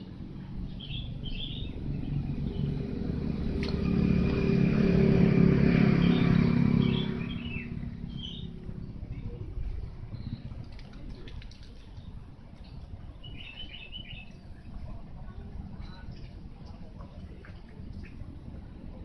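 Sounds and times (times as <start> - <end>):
vehicle engine passing by: 0.3 - 10.8
birds chirping: 0.6 - 15.0.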